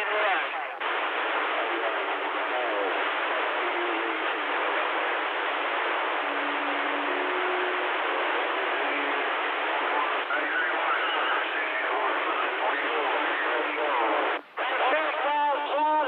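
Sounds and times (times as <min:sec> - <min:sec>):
radio static hiss: 0:00.0 - 0:16.0
short steady radio tones: 0:00.0 - 0:16.0
faint warbling radio whistles: 0:06.2 - 0:13.9.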